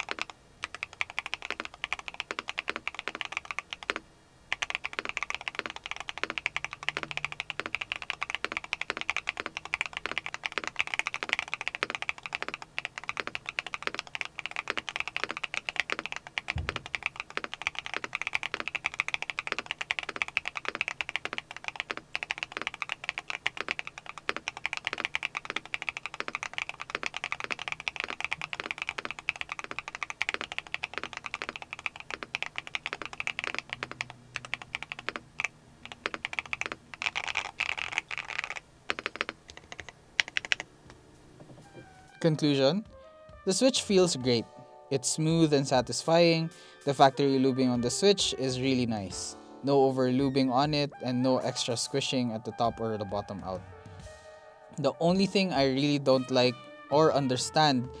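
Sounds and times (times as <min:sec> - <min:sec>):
fast typing on mechanical keyboard: 0:00.0 - 0:40.8
low thump: 0:16.6 - 0:17.0.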